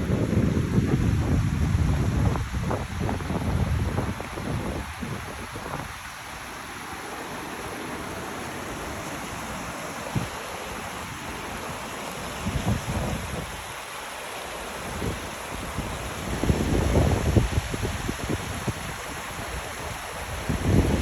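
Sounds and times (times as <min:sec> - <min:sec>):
wind buffeting microphone: 0:00.0 - 0:06.5, 0:12.4 - 0:13.6, 0:14.9 - 0:21.0
stream running: 0:00.0 - 0:21.0.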